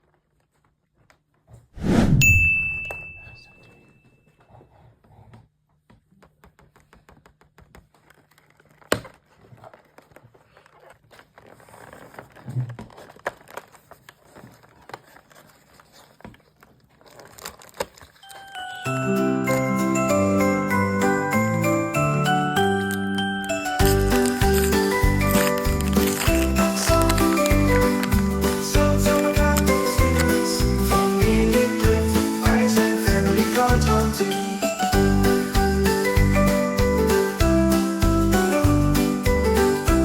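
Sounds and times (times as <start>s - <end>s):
short ringing ding: 2.2s - 4.3s
cardboard packaging rustling: 7.6s - 19.0s, 23.8s - 34.9s.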